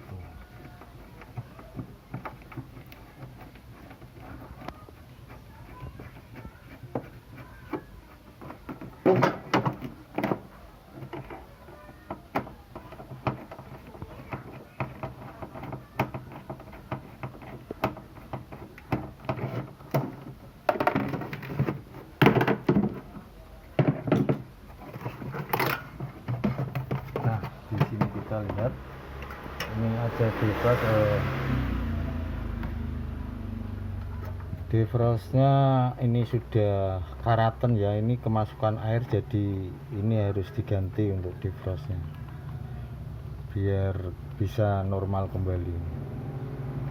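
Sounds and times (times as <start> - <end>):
plastic panel clattering: 0.0 - 29.8.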